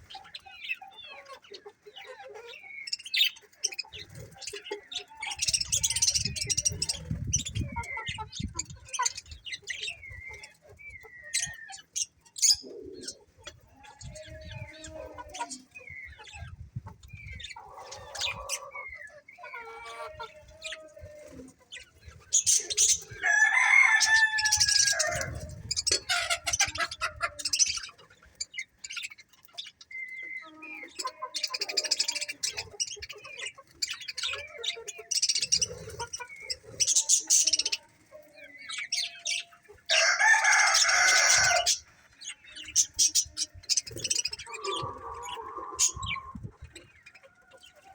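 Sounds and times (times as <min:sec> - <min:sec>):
small birds chirping: 0:00.0 - 0:47.9
rooster crowing: 0:23.2 - 0:25.5, 0:39.9 - 0:41.8.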